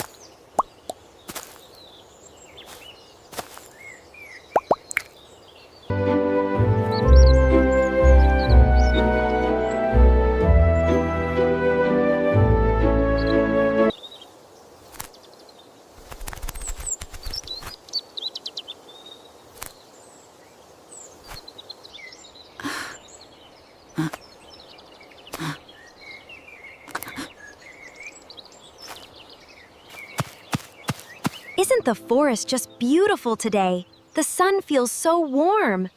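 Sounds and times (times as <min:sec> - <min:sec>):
birds chirping and tweeting: 0:00.0 - 0:11.4, 0:12.7 - 0:35.9
quick run of clicks: 0:16.0 - 0:17.8.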